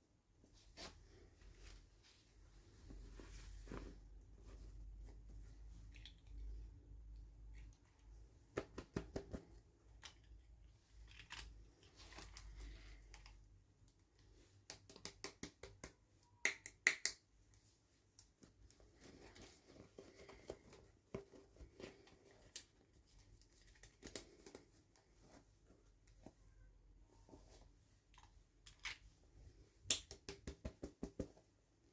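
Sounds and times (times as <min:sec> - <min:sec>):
soft packaging rustling: 0:00.3 - 0:08.3, 0:09.6 - 0:14.6, 0:17.5 - 0:29.8.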